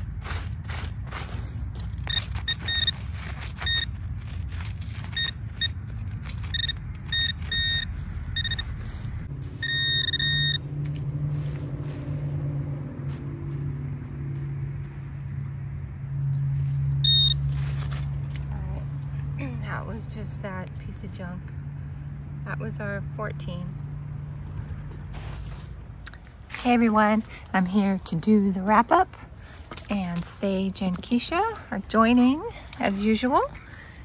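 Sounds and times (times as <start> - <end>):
digging scraping and clicks: 0.0 - 12.4, 24.5 - 34.0
vehicle engine low hum: 0.0 - 34.0
metal detector short beeps: 2.0 - 3.0, 3.6 - 4.0, 5.1 - 5.8, 6.4 - 8.7, 9.6 - 10.6, 17.0 - 17.4.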